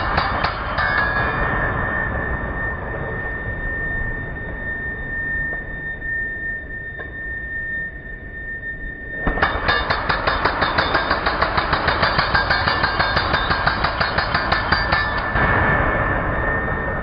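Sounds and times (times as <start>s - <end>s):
concrete breaker hammering: 0.0s - 1.4s, 9.3s - 15.4s.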